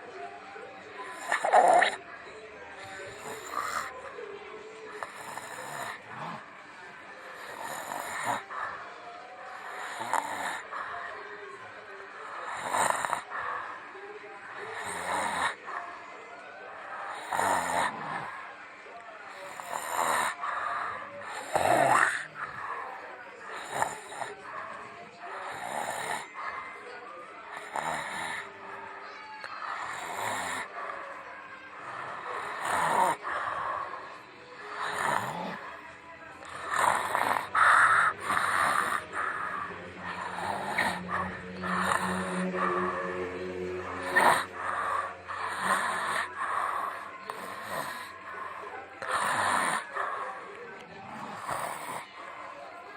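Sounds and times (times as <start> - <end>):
rasping snores: 1.0 - 2.1, 2.8 - 4.0, 4.9 - 6.5, 7.3 - 8.8, 9.6 - 10.7, 12.3 - 13.6, 14.6 - 15.7, 17.1 - 18.4, 19.4 - 22.8, 23.5 - 24.5, 25.4 - 26.4, 27.5 - 28.6, 29.6 - 30.8, 31.8 - 35.8, 36.4 - 50.4, 51.0 - 52.2
person snoring: 1.1 - 2.0, 7.4 - 8.5, 9.6 - 10.7, 21.3 - 22.2, 27.5 - 28.5, 34.8 - 35.6, 36.4 - 48.2
steady low drone: 37.5 - 47.1.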